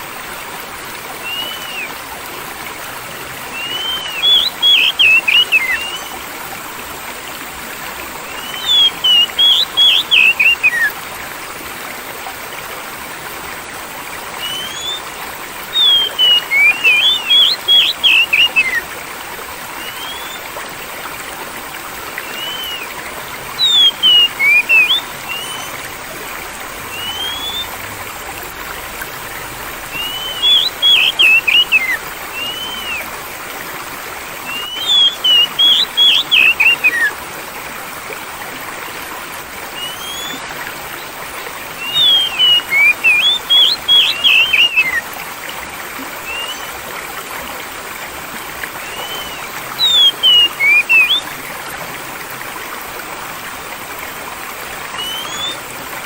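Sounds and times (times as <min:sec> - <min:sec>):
water flowing: 0:00.0 - 0:56.0
songbird whistling: 0:01.2 - 0:01.9, 0:03.5 - 0:06.2, 0:08.3 - 0:10.9, 0:14.4 - 0:15.0, 0:15.7 - 0:18.8, 0:19.8 - 0:20.4, 0:22.2 - 0:25.8, 0:26.9 - 0:27.7, 0:29.9 - 0:33.1, 0:34.5 - 0:37.1, 0:39.8 - 0:40.4, 0:41.8 - 0:45.0, 0:46.3 - 0:46.7, 0:48.8 - 0:51.3, 0:55.0 - 0:55.6.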